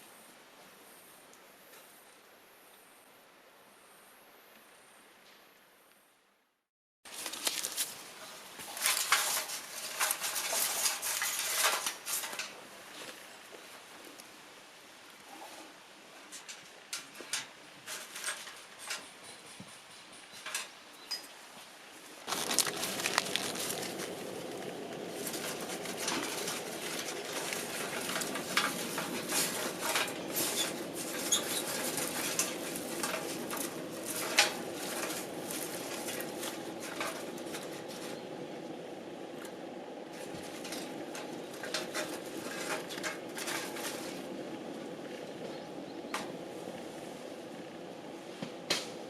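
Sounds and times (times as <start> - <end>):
burning wood crackling and popping: 7.1 - 13.1, 22.2 - 49.0
wood fire rushing flame: 22.2 - 49.0.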